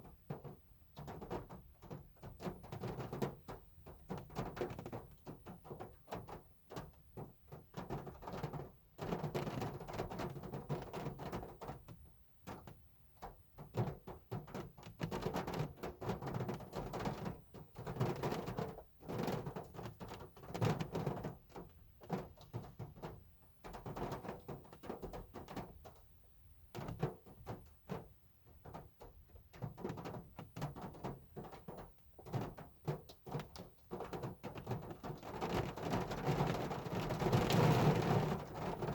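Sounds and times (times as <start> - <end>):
hard rain on a car: 32.3 - 38.9.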